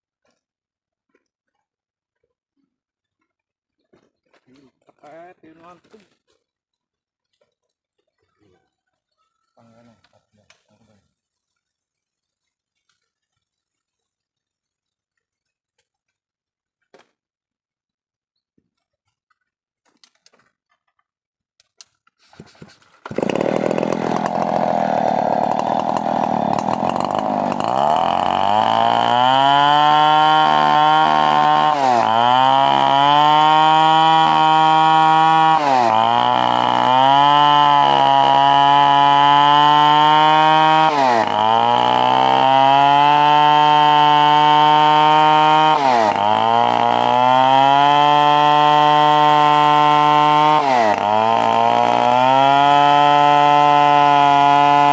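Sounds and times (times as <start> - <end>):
chainsaw starting and revving: 22.9 - 54.9.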